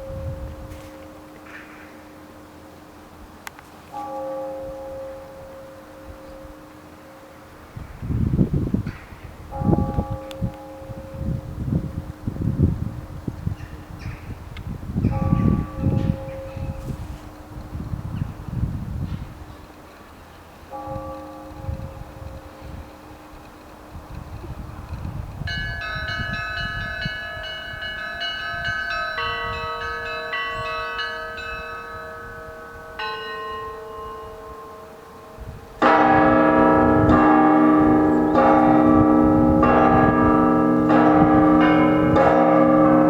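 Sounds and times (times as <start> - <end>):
large bells ringing: 3.8 - 13.0, 14.9 - 19.2, 20.7 - 24.0, 25.4 - 43.0.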